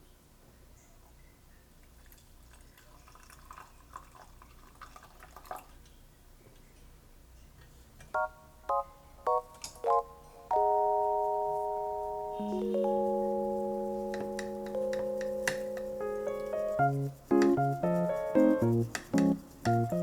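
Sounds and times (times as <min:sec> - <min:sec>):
kitchenware clicks and taps: 0:14.1 - 0:15.9.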